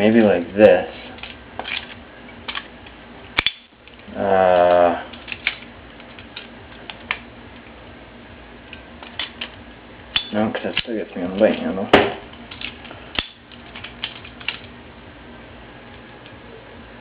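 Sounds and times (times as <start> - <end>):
person humming: 4.1 - 5.1.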